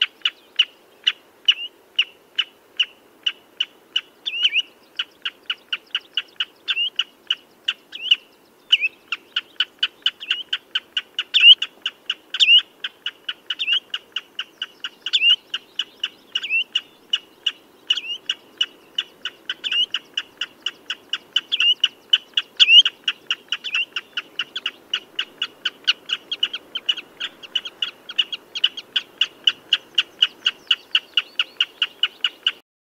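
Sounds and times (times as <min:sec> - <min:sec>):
bird piping calls: 0:00.0 - 0:32.6.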